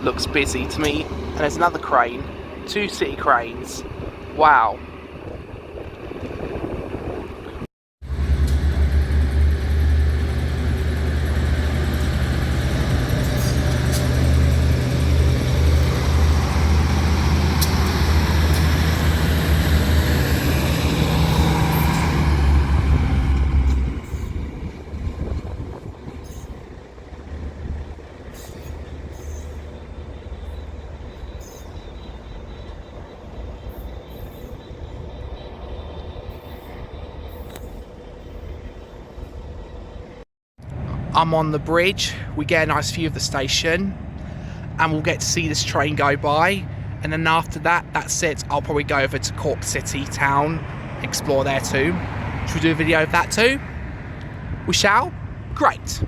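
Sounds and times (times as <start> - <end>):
station background noise: 0.0 - 6.2, 24.4 - 40.2, 40.8 - 56.0
diesel train engine hum: 0.0 - 56.0.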